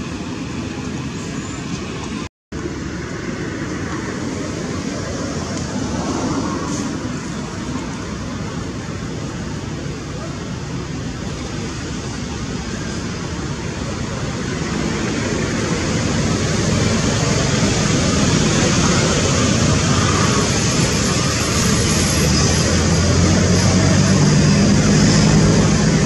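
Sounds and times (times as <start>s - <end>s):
low engine hum: 0.0s - 26.0s
vehicle passing: 13.8s - 26.0s.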